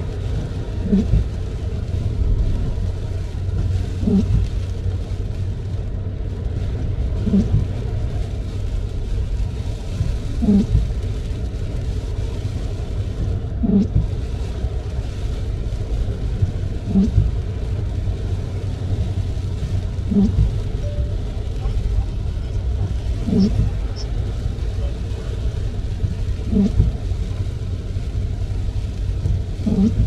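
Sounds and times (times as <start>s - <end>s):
tyres and engine on wet road: 0.0s - 30.0s
windshield wipers squeaky groan: 0.3s - 1.6s, 3.0s - 4.8s, 7.2s - 7.8s, 9.9s - 11.0s, 13.2s - 14.6s, 16.3s - 17.4s, 18.4s - 27.4s, 28.8s - 30.0s.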